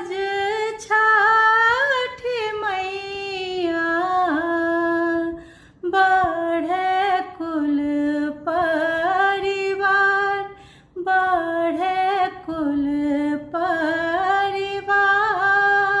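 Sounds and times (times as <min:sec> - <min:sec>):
woman singing unaccompanied: 0:00.0 - 0:16.0.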